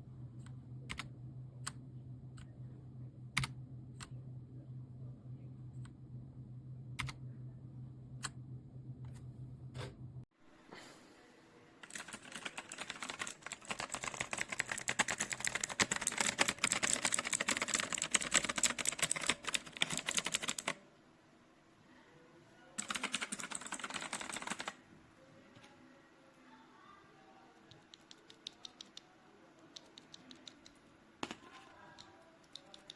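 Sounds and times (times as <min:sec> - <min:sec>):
mechanical keyboard typing: 0:00.4 - 0:01.1, 0:07.0 - 0:07.2, 0:11.8 - 0:20.8, 0:22.8 - 0:24.8, 0:27.7 - 0:30.8, 0:31.9 - 0:32.9.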